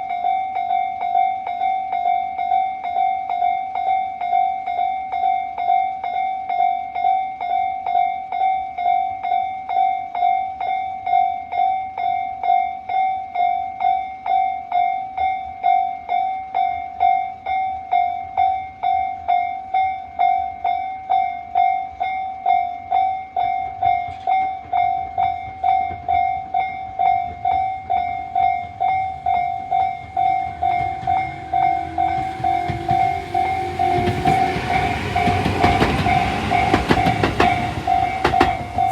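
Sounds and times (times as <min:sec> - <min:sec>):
electronic level-crossing bell: 0:00.0 - 0:38.9
train rumble: 0:27.2 - 0:38.9.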